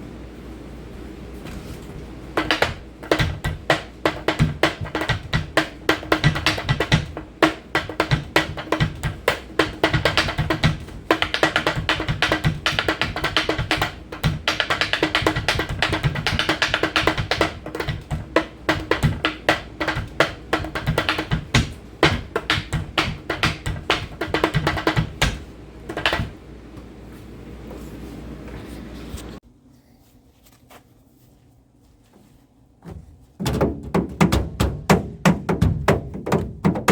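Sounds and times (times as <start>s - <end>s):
hand drumming on objects: 2.3s - 26.4s, 33.4s - 36.9s.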